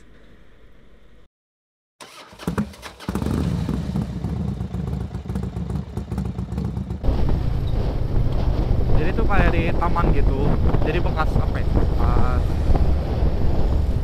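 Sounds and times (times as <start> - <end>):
motorcycle engine running: 2.5 - 14.0
wind buffeting microphone: 5.8 - 14.0.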